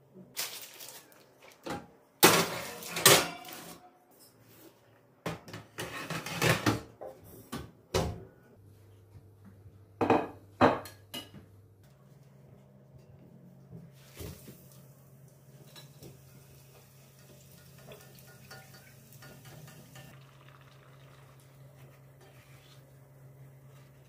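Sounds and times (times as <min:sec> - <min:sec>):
dishes clinking and clattering: 0:02.2 - 0:04.4, 0:15.6 - 0:16.2, 0:17.1 - 0:21.4.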